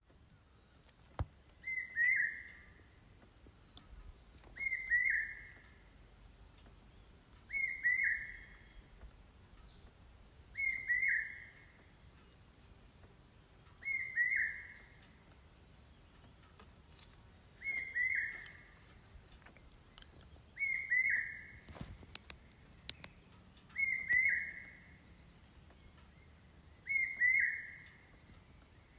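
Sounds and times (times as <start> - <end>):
bird calling: 0.8 - 6.3, 7.0 - 9.9, 10.5 - 12.3, 13.7 - 15.3, 16.2 - 26.0, 26.8 - 28.2.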